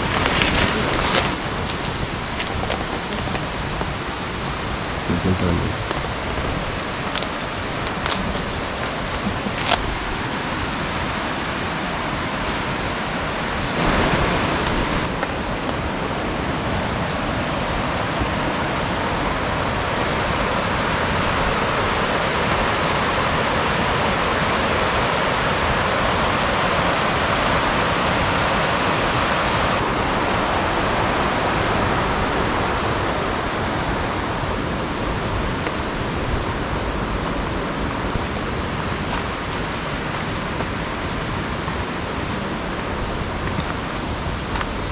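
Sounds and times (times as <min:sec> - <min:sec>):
heavy rain: 0:00.0 - 0:44.9.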